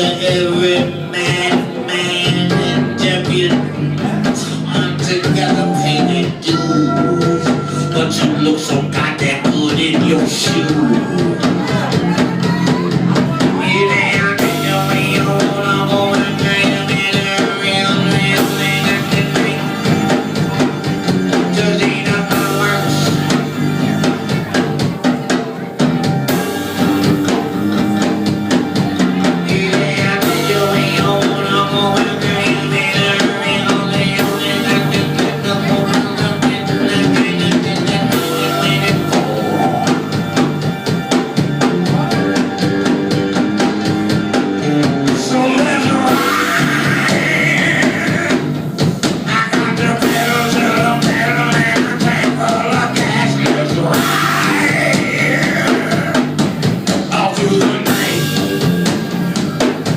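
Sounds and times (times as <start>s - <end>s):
drum kit beat: 0.0s - 59.9s
guitar: 0.0s - 59.9s
wavering lead melody: 5.0s - 48.6s.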